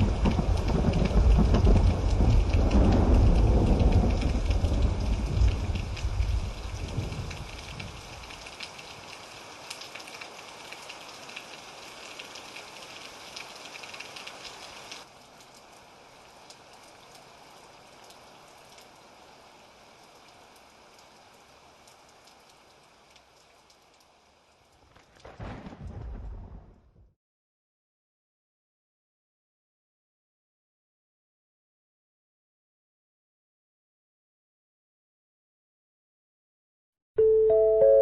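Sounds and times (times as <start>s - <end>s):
rain falling: 0.0s - 26.8s.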